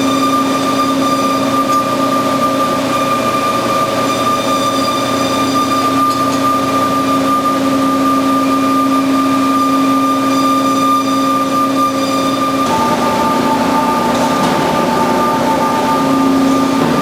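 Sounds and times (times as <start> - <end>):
band saw humming: 0.0 - 17.0
higher tone: 12.5 - 17.0.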